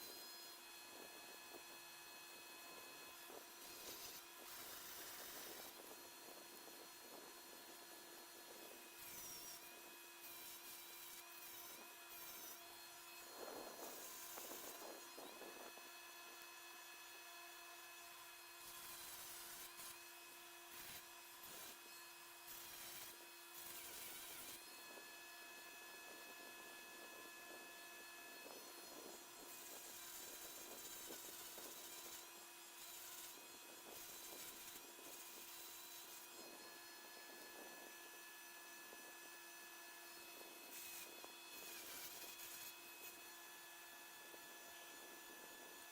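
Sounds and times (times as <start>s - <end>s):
rotary tool whirring: 26.0s - 45.9s.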